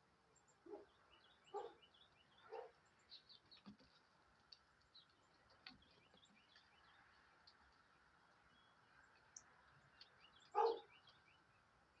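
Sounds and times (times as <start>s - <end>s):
dog barking: 0.6s - 0.9s, 1.5s - 1.8s, 2.4s - 2.8s, 10.5s - 10.9s.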